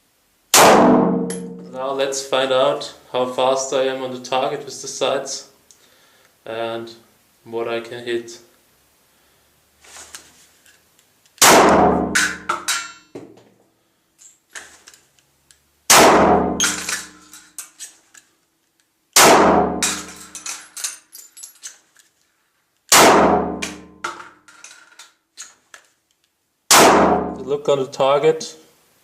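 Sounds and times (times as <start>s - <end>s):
pistol shots echoing: 0.6s - 1.6s, 11.4s - 12.5s, 15.9s - 17.1s, 19.2s - 20.2s, 22.9s - 23.8s, 26.7s - 27.4s
small metal clinks: 19.9s - 22.2s.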